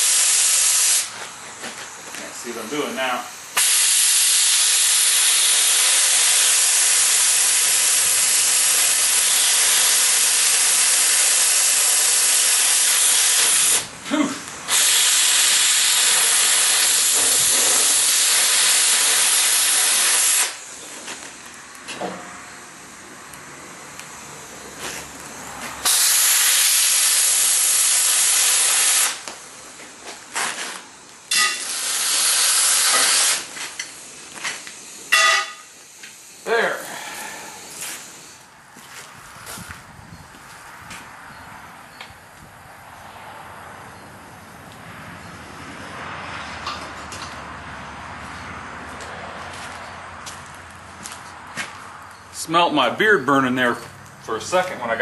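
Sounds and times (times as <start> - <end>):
cutting torch hissing: 0.0 - 38.5.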